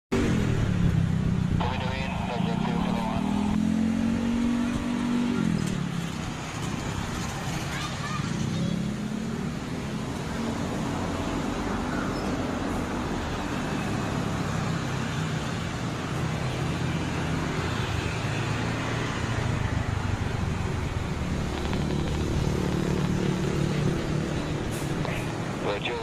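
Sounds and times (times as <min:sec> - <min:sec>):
turboprop engines droning: 0:00.6 - 0:04.1.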